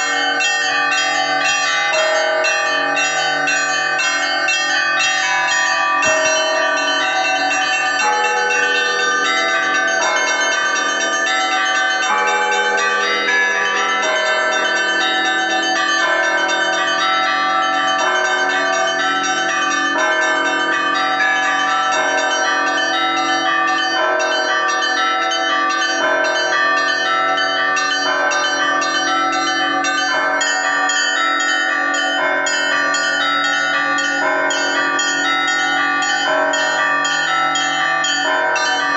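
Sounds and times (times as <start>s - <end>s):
church bells ringing: 0.0s - 38.9s.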